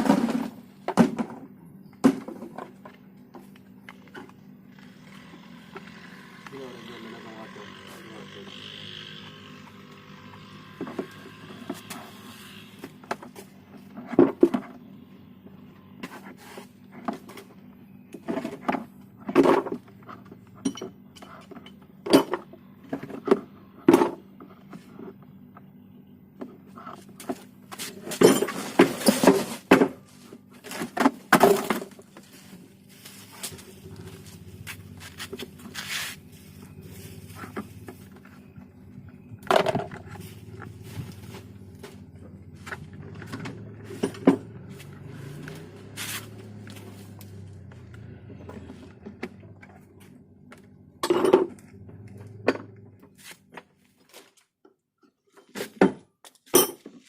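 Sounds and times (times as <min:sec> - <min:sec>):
tools and parts clinking: 0:18.2 - 0:23.3, 0:27.2 - 0:32.3, 0:50.6 - 0:52.9, 0:55.3 - 0:57.0.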